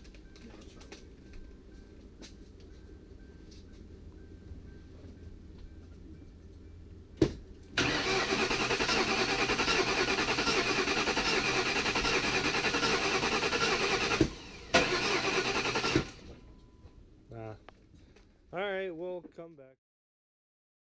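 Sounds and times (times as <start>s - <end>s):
car starter cranking: 7.8s - 16.4s.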